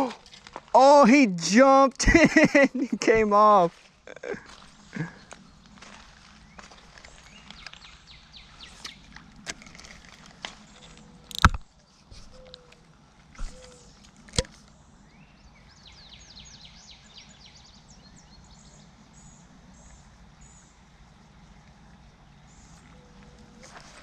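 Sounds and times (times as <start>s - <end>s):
creekside ambience: 0.0s - 24.0s
songbird singing: 0.0s - 24.0s.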